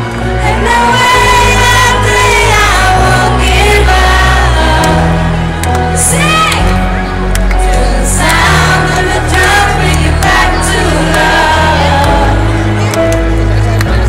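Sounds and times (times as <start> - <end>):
crowd noise: 0.0 - 14.0
woman singing: 0.4 - 5.3.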